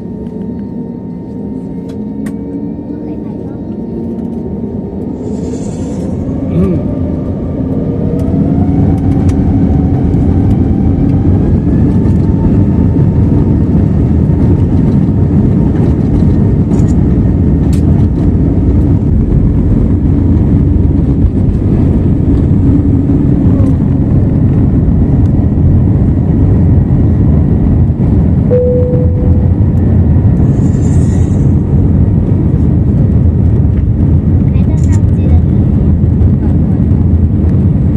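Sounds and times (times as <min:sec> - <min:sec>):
jet engines roaring: 0:00.0 - 0:37.9
short cabin tone: 0:28.5 - 0:30.0.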